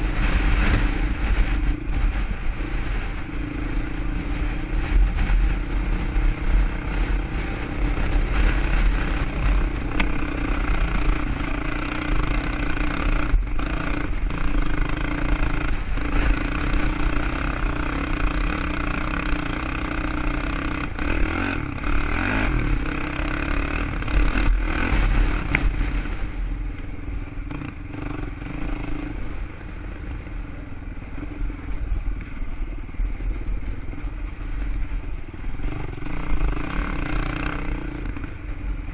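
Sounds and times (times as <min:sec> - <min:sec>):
quad engine rumbling: 0:00.0 - 0:38.9.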